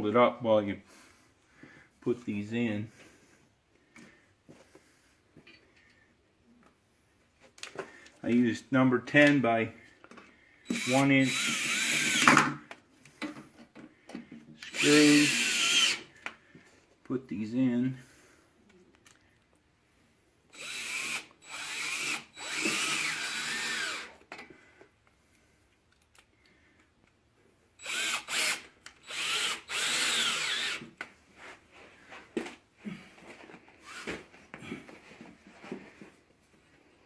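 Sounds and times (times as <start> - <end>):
power drill driving screws: 10.7 - 12.6, 14.6 - 16.1, 20.5 - 24.2, 27.8 - 31.0, 33.8 - 34.2.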